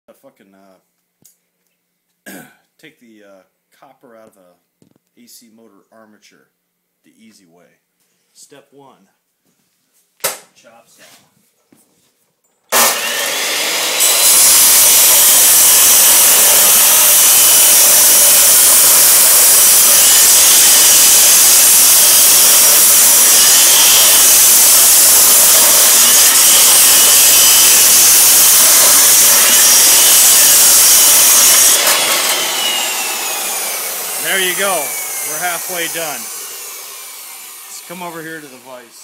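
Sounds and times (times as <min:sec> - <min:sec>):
chop saw cutting metal: 0:12.7 - 0:39.0.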